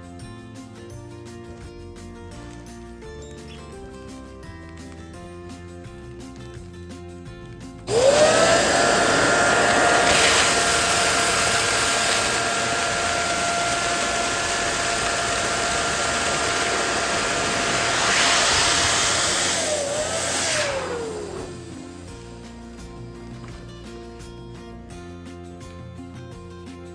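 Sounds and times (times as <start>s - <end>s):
balloon inflating: 7.9s - 22.9s
balloon inflator pump whining: 7.9s - 23.7s.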